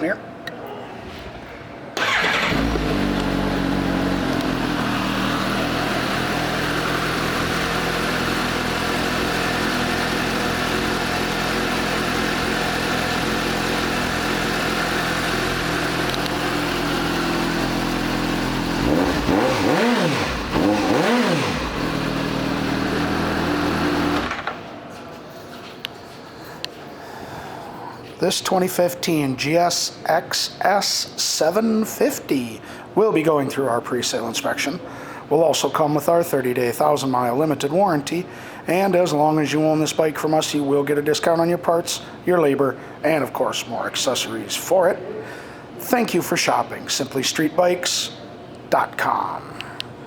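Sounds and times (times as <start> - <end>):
motorcycle engine idling: 2.0 - 24.2.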